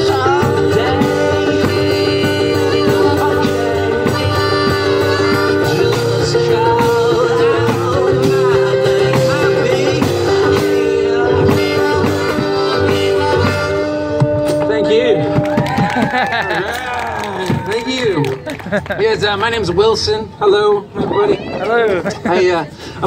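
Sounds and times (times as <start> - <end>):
person singing: 0.0 - 14.1
strummed guitar: 0.0 - 16.2
steady drum beat: 0.0 - 19.7.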